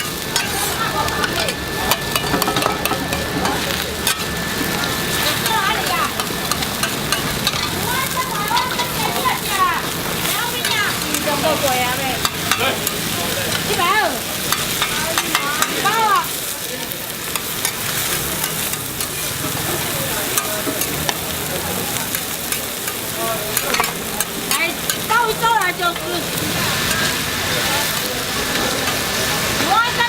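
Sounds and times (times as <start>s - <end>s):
metal utensil scraping: 0.0s - 7.8s
food sizzling in oil: 0.0s - 30.0s.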